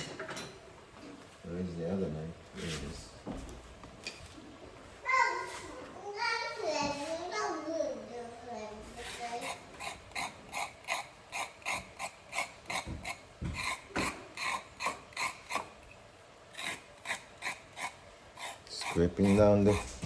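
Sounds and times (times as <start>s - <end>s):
knife scraping a carrot: 9.0s - 15.8s, 16.5s - 20.0s.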